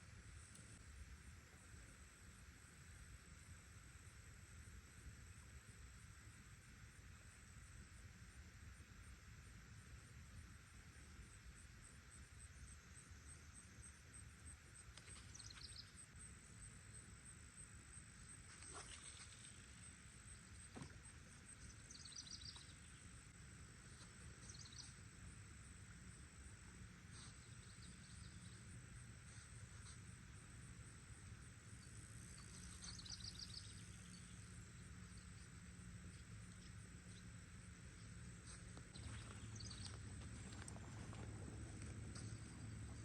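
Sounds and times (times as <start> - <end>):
low rumble: 39.0 - 43.0.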